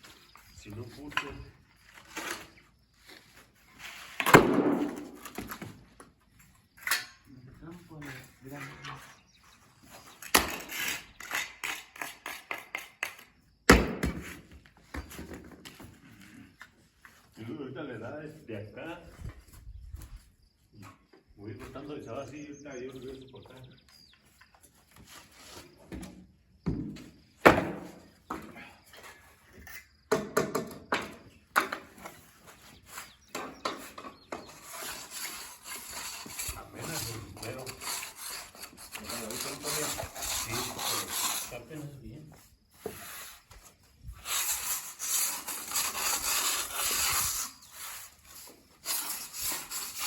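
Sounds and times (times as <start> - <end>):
hand tool scraping on concrete: 0.0 - 13.5, 14.1 - 17.6, 18.2 - 26.2, 27.0 - 50.0
hand tool knocking on concrete: 30.1 - 31.9.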